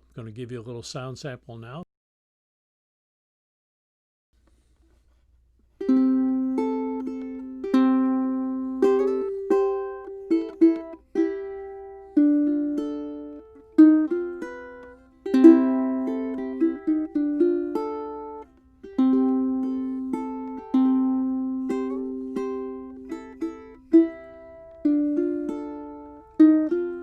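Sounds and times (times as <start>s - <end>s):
fingerpicked ukulele melody: 5.7s - 27.0s.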